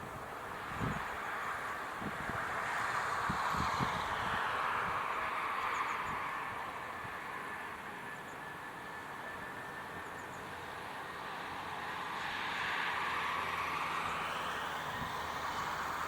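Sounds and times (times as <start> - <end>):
jet engines rushing with whine: 0.0 - 16.0.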